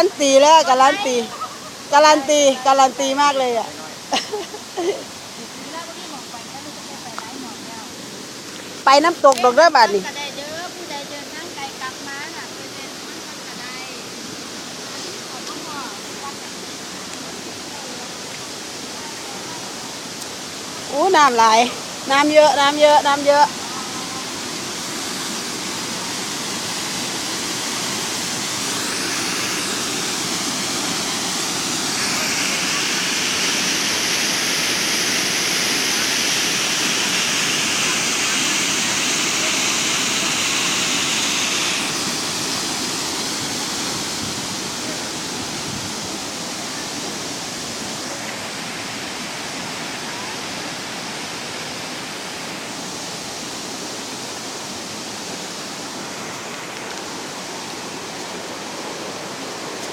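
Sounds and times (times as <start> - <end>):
waterfall rushing: 0.0 - 59.9.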